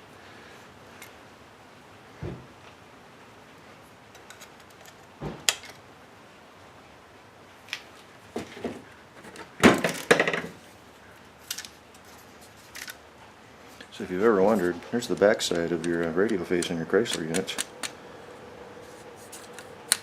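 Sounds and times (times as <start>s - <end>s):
small plastic parts clicking: 15.0s - 18.0s.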